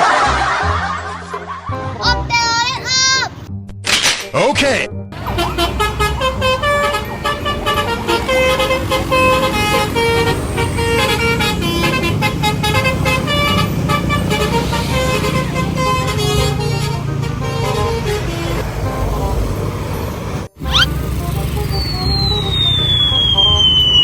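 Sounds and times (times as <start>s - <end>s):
bus horn tooting melody: 5.2s - 24.0s
engine rumble: 5.2s - 24.0s.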